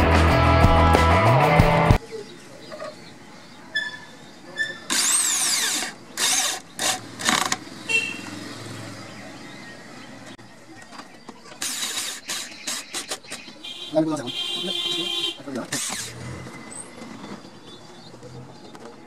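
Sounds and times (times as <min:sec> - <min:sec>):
power drill bursts: 0:04.8 - 0:08.2, 0:11.5 - 0:13.5, 0:15.6 - 0:16.3.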